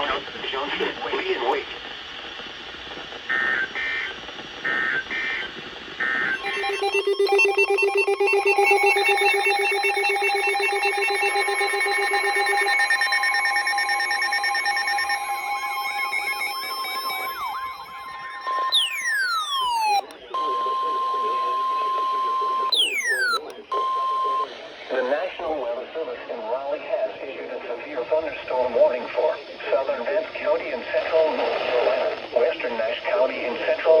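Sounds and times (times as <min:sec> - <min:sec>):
buzzy digital alert data bursts: 0:06.2 - 0:24.5
layered attention-signal alarm tones: 0:06.3 - 0:24.5.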